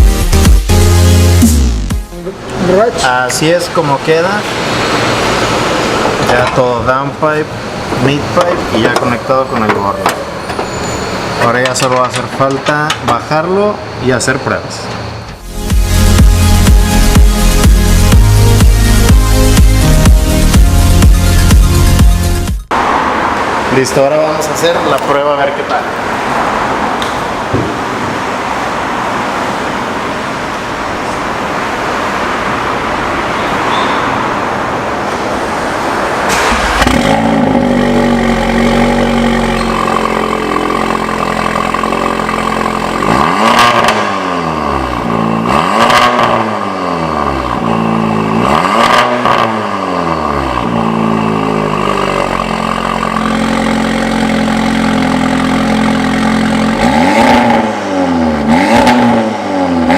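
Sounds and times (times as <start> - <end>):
car engine revving: 0.0 - 10.5, 15.0 - 59.9
car engine idling: 24.4 - 45.7, 50.0 - 58.5.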